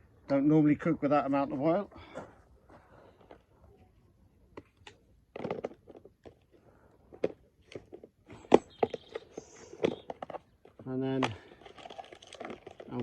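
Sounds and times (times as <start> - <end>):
cooking gear clicks and knocks: 7.1 - 13.0.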